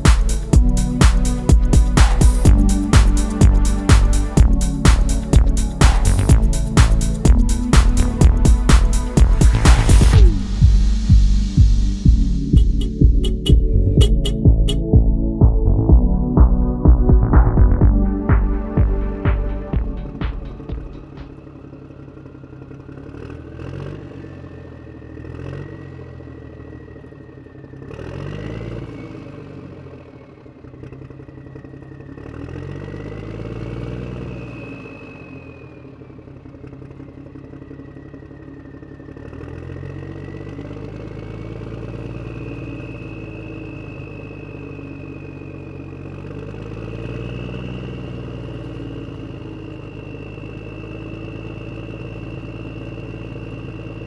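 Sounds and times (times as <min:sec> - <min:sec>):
high whine: 0:00.0 - 0:21.6
simulated truck engine revving: 0:00.0 - 0:54.0.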